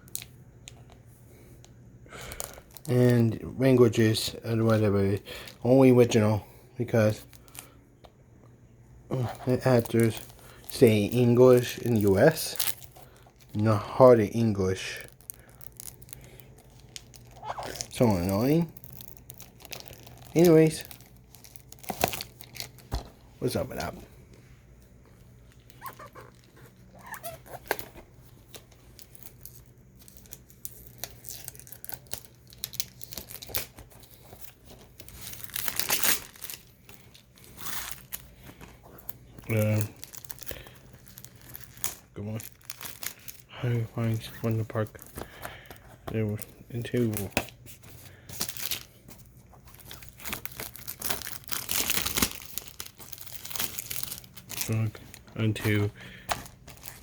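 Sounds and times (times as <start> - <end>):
plastic shrink wrap crinkling: 2.2 - 6.1, 9.1 - 57.0.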